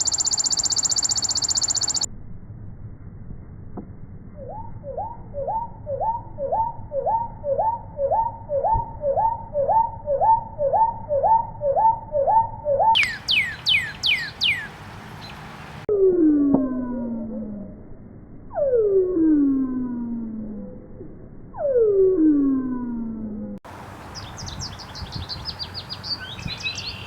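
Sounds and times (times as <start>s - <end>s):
slowed bird calls: 0.0s - 2.1s, 4.4s - 15.7s.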